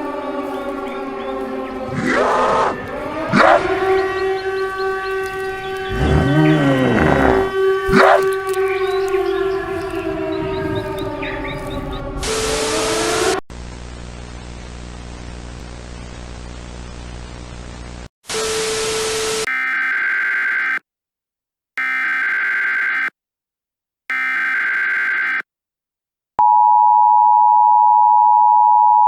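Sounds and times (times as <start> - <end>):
static burst: 0.0 - 19.4.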